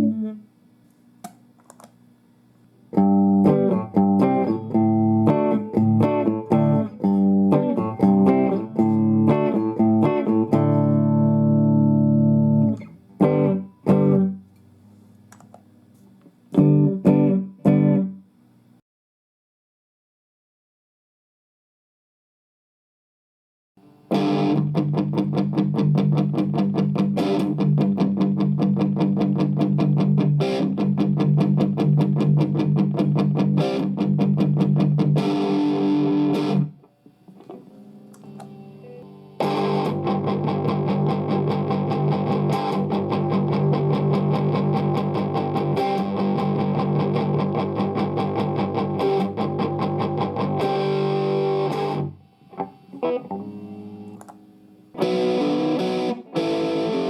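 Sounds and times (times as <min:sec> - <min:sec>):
distorted electric guitar: 0:03.0 - 0:14.4, 0:16.6 - 0:18.2, 0:23.8 - 0:57.0.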